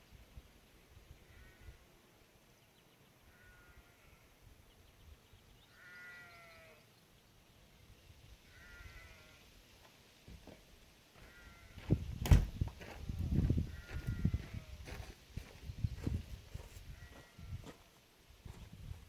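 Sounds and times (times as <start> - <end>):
sheep bleating: 5.7 - 6.8, 8.5 - 9.4.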